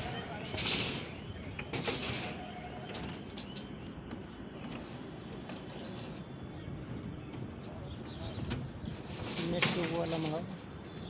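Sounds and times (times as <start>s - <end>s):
steel bars clicking and creaking: 0.0s - 3.7s, 9.0s - 10.7s.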